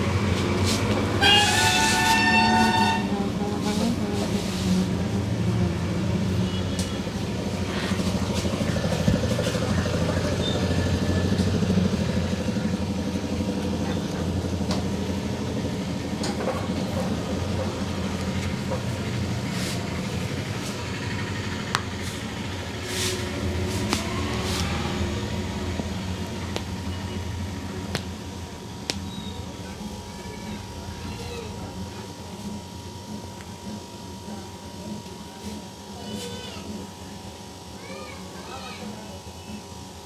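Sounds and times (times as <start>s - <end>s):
low engine rumble: 0.0s - 35.1s
vehicle horn honking: 1.1s - 3.8s, 6.3s - 7.1s.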